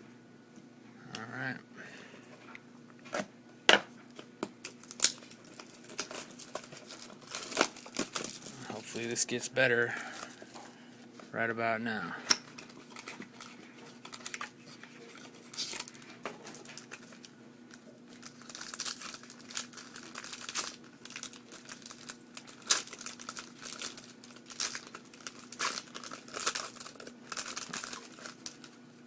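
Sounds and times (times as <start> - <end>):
wrapper tearing and crinkling: 4.6 - 9.2, 12.4 - 28.8.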